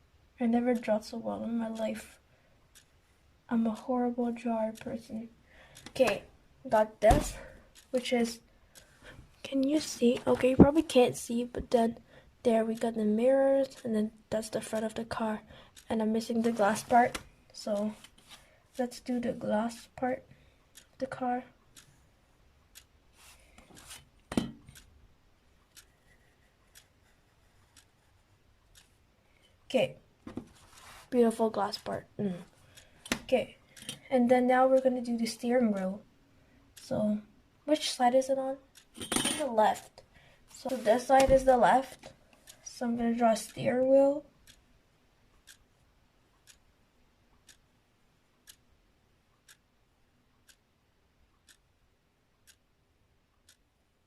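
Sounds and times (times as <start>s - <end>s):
faint clock ticking: 0.0s - 54.0s
tap on drawing surface: 7.1s - 7.4s.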